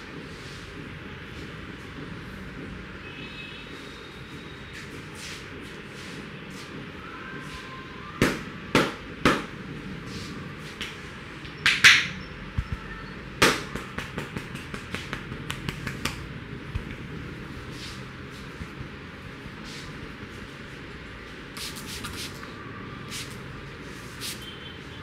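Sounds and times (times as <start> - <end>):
hands slapping a head: 11.6 - 12.1, 13.4 - 17.0.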